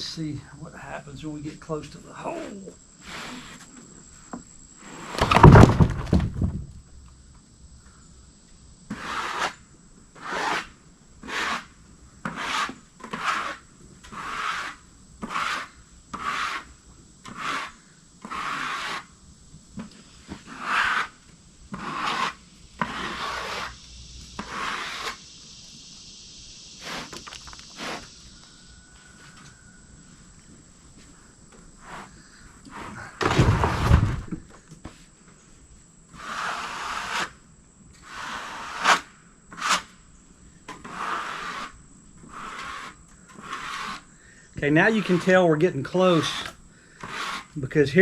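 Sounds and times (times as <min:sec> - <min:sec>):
rasping strokes on wood: 0:02.3 - 0:03.8, 0:08.9 - 0:09.6, 0:10.2 - 0:19.1, 0:20.2 - 0:23.8, 0:24.4 - 0:25.2, 0:36.1 - 0:37.4, 0:38.0 - 0:39.9, 0:40.8 - 0:44.1, 0:44.7 - 0:47.6.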